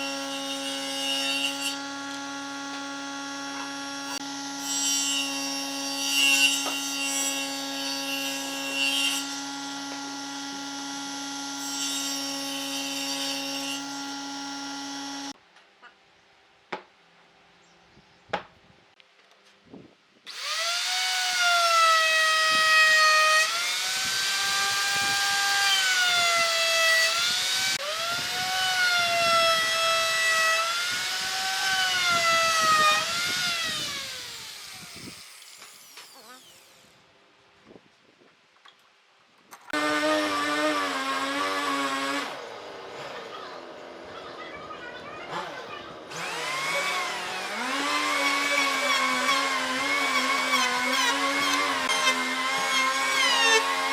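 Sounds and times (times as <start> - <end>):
electric tool whining: 0.0 - 15.4, 20.3 - 37.0, 39.6 - 53.9
machine hum with cutting noise: 0.0 - 15.4, 39.8 - 53.9.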